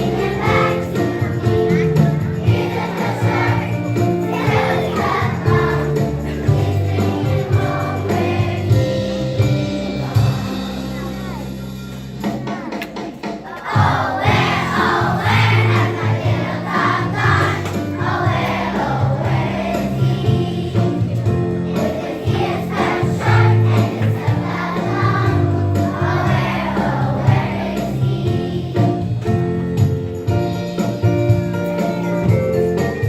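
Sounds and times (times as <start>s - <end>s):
group of voices singing: 0.0s - 9.0s, 13.3s - 21.1s, 21.7s - 29.0s
backing music with bass: 0.0s - 33.0s.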